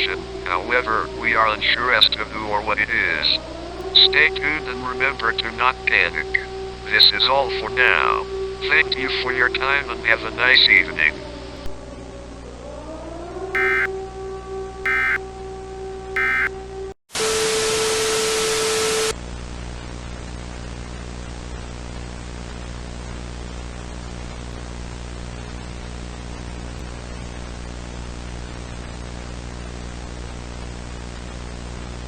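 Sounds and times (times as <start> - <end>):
data tone bursts: 13.6 - 13.9, 14.9 - 15.2, 16.2 - 16.5
harsh static with tone: 13.6 - 13.9, 14.9 - 15.2, 16.2 - 16.5
static and hum: 13.6 - 13.9, 14.9 - 15.2, 16.2 - 16.5.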